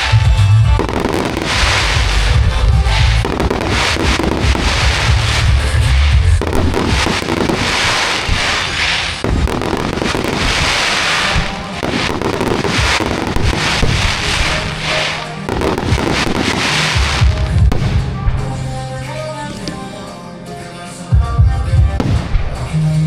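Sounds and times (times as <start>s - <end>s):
fireworks bangs and crackle: 0.0s - 19.9s, 21.5s - 23.0s
music: 0.0s - 23.0s.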